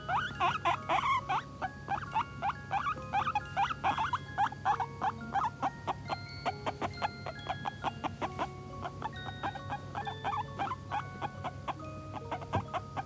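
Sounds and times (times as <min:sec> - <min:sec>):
guinea pig squeaking: 0:00.0 - 0:13.0.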